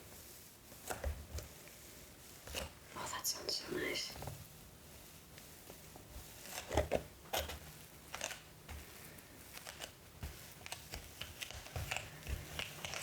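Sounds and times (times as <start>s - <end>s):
faint steady hiss and hum: 0.0s - 13.0s
cardboard packaging rustling: 4.3s - 13.0s.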